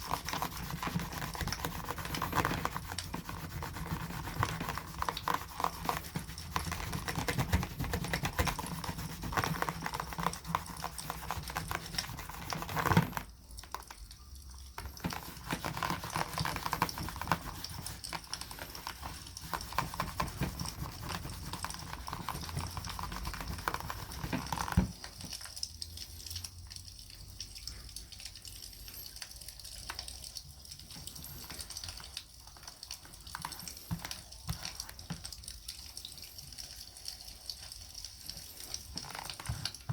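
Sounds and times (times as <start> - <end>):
rubbing wax into leather: 0.0 - 13.3, 14.8 - 25.2, 38.3 - 39.9.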